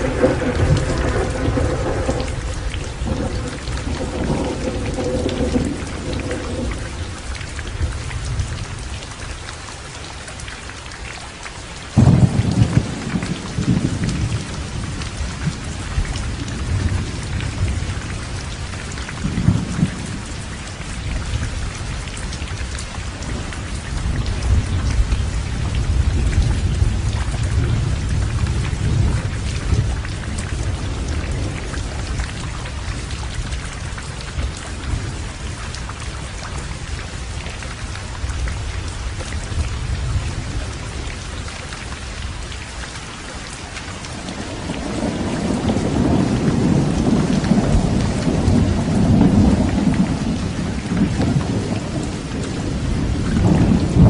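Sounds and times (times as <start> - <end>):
loud thunderclap: 0.0 - 7.0, 12.0 - 17.9, 44.8 - 54.0
low rolling thunder: 0.0 - 8.7, 12.0 - 22.6, 23.2 - 36.0, 44.1 - 54.0
heavy rain falling: 0.0 - 54.0.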